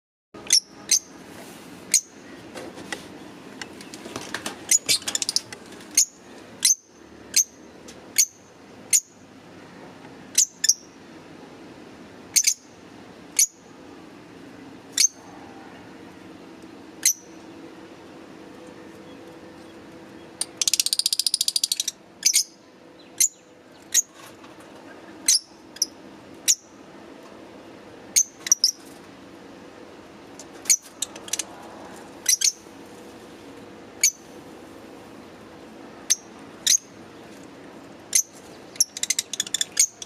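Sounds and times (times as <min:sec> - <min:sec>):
lovebirds high-pitched chirps: 0:00.4 - 0:01.1, 0:01.9 - 0:02.2, 0:04.7 - 0:09.2, 0:10.4 - 0:11.0, 0:12.4 - 0:12.7, 0:13.4 - 0:13.6, 0:15.0 - 0:15.2, 0:17.0 - 0:17.4, 0:19.0 - 0:24.2, 0:25.0 - 0:26.8, 0:28.1 - 0:28.9, 0:32.2 - 0:32.7, 0:34.0 - 0:34.3, 0:36.0 - 0:37.0, 0:38.1 - 0:40.0
birds chattering calls: 0:01.9 - 0:09.1, 0:18.5 - 0:26.8, 0:30.3 - 0:40.0.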